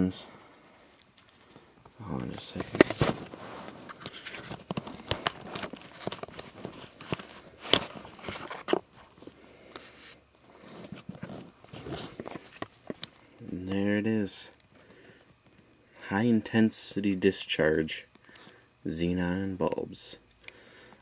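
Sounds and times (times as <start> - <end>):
cardboard and plastic packaging rustling: 0.0 - 13.5.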